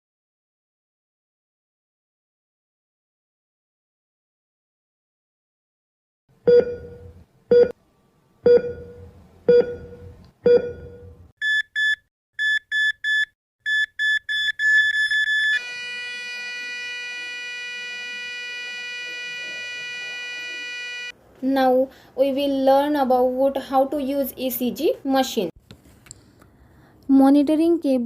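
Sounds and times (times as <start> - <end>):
short high electronic beeps: 8.5 - 21.1
steady flatline tone: 15.6 - 21.1.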